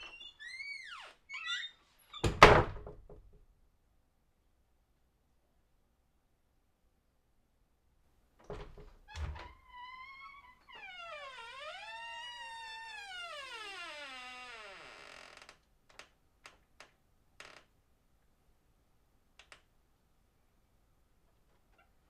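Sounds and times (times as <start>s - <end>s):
door hinge creaking: 0.0s - 2.8s, 8.4s - 16.0s.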